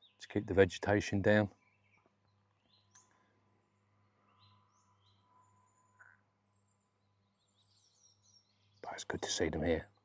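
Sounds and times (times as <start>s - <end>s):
distant bird chirps: 0.0s - 10.0s.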